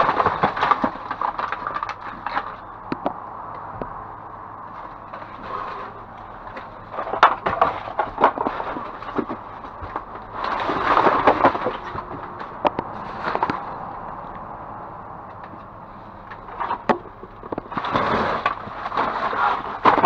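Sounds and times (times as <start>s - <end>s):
rustling and crinkling packaging: 0.0s - 3.1s, 4.6s - 14.4s, 15.3s - 20.0s
sharp knocks and clatters: 6.4s - 13.7s, 16.3s - 20.0s.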